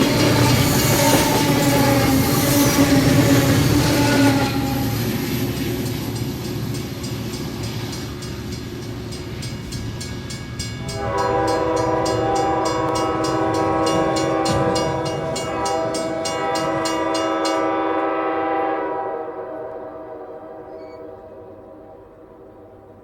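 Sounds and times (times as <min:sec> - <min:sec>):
train air horn chord: 0:00.0 - 0:05.1, 0:10.8 - 0:23.0
crossing bell clanging: 0:00.0 - 0:18.0
train rail rumble: 0:00.0 - 0:23.0.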